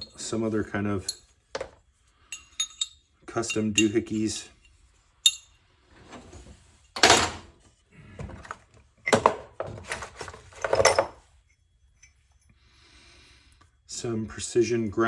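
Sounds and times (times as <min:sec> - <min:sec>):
tools knocking and scraping in toolbox: 0:08.2 - 0:11.2.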